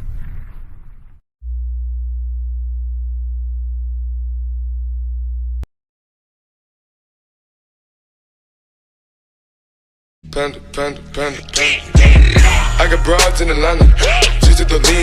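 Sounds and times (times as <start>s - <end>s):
deep electronic hum: 1.4s - 5.7s.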